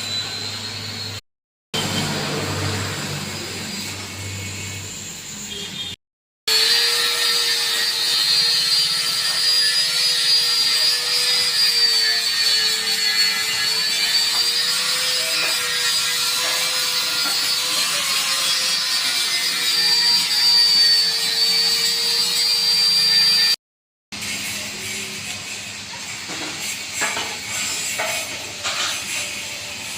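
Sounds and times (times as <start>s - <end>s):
angle grinder on metal: 6.5s - 23.6s, 24.2s - 29.9s.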